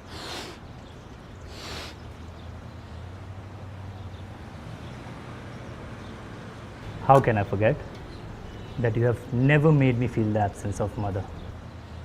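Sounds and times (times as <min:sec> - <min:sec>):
person drawing breath: 0:00.0 - 0:00.7, 0:01.4 - 0:02.1.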